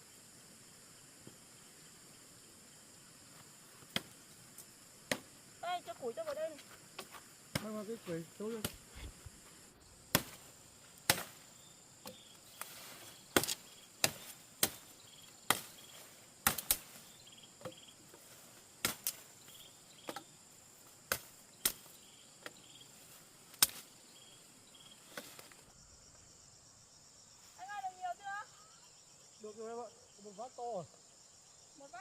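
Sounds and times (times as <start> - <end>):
crickets chirping: 0.0 - 32.0
axe chopping firewood: 3.8 - 4.2, 5.1 - 5.3, 7.0 - 8.9, 10.1 - 15.8, 16.4 - 17.0, 17.6 - 19.3, 20.0 - 20.4, 21.0 - 22.6, 23.5 - 23.9.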